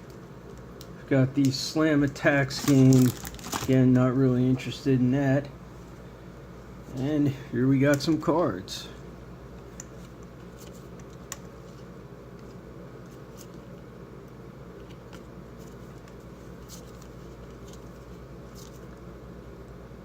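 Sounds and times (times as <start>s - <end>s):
low room hum: 0.0s - 20.0s
trading cards rustling and clicking: 1.4s - 3.9s, 9.6s - 13.8s, 14.8s - 19.0s.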